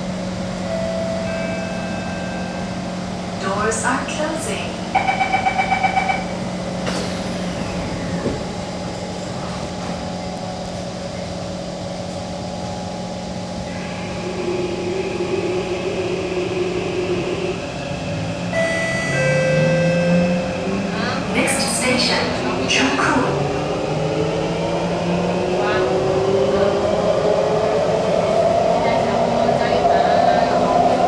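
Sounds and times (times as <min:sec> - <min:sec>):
traction motors whining: 0:00.0 - 0:31.0
train car hum: 0:00.0 - 0:31.0
train doors knocking shut: 0:05.0 - 0:10.2.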